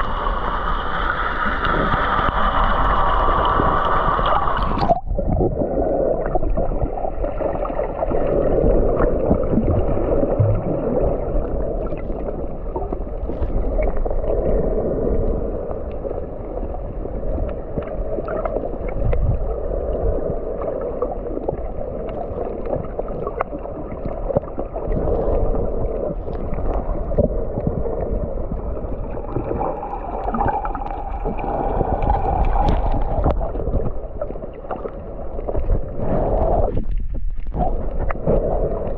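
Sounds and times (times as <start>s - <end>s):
sea water rushing and gurgling: 0.0s - 38.9s
low rumble: 24.5s - 38.9s.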